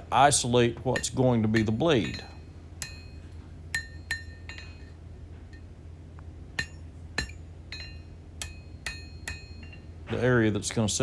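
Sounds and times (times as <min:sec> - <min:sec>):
hammer striking steel on anvil: 0:00.9 - 0:05.0, 0:06.6 - 0:10.8.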